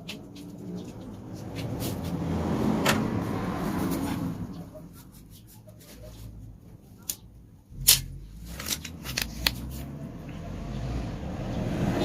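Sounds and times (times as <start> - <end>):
engine parts clicking and tapping: 0.0 - 3.1, 6.7 - 10.0.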